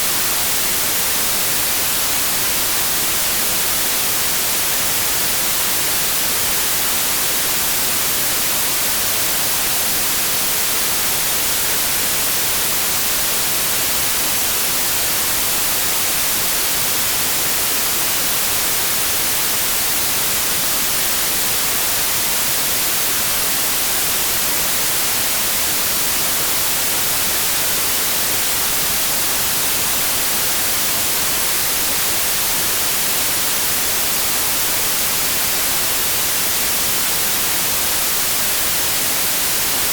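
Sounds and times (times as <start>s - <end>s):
white noise hiss: 0.0s - 39.9s.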